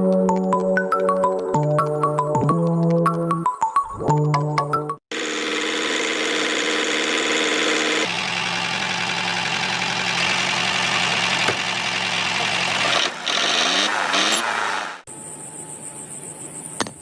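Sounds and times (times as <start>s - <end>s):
small engine running: 5.1s - 15.1s.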